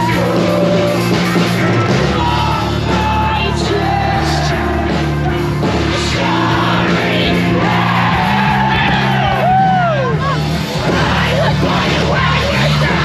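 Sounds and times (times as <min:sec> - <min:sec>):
rock band playing live: 0:00.0 - 0:13.0.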